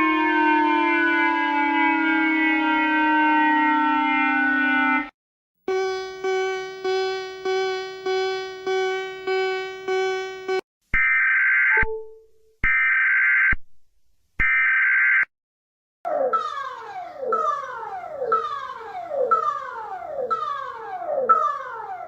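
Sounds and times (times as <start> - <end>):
falling siren sweeps: 0.0 - 5.1, 5.7 - 12.2, 16.1 - 22.0
harsh buzzer tones: 5.6 - 10.6
pitched alert beeps: 11.7 - 12.5.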